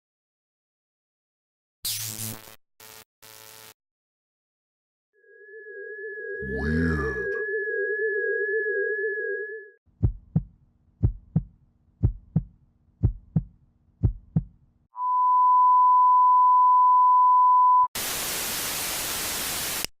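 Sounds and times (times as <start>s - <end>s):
heartbeat: 9.9s - 14.6s
loud static hiss: 18.0s - 19.9s.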